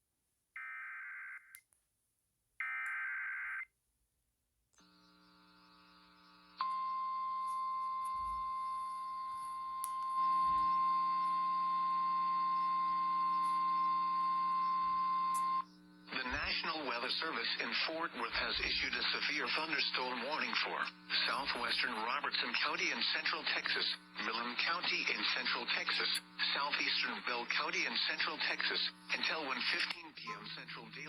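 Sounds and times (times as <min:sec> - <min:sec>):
low steady receiver hum: 0:04.8 - 0:31.0.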